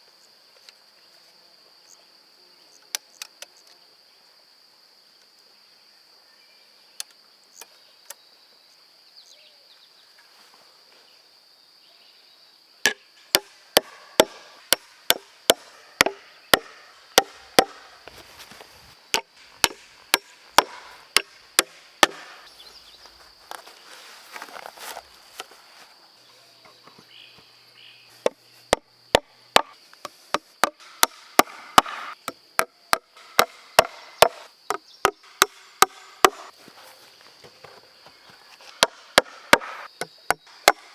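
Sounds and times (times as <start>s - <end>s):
insects droning: 0.0s - 40.9s
hammer driving nails into wood: 13.3s - 18.0s, 19.1s - 22.5s, 30.6s - 32.1s, 38.8s - 39.8s.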